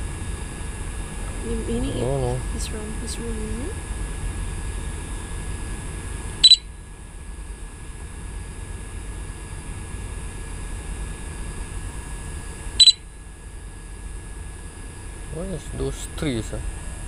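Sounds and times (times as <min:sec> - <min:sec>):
steady low hum: 0:00.0 - 0:17.0
high electronic warning beeps: 0:06.4 - 0:06.8, 0:12.8 - 0:13.1.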